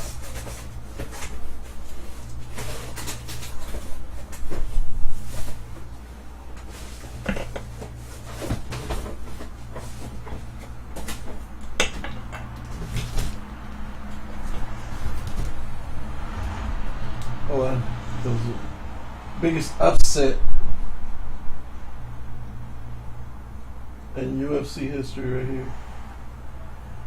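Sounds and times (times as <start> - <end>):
low hum: 0.0 - 19.8.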